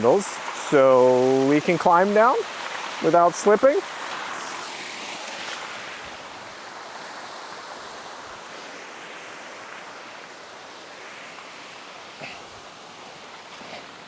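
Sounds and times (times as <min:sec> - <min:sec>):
creek water rushing: 0:00.0 - 0:14.0.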